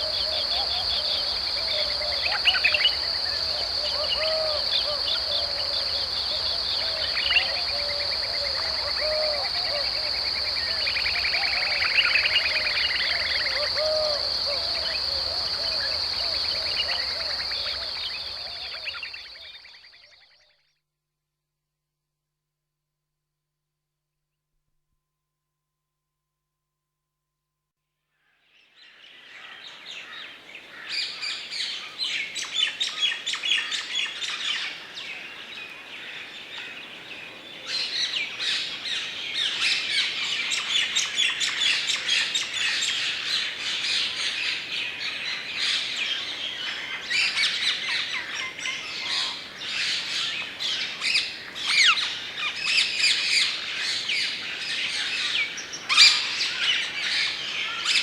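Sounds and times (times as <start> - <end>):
birds chirping and calling: 46.6 - 58.0.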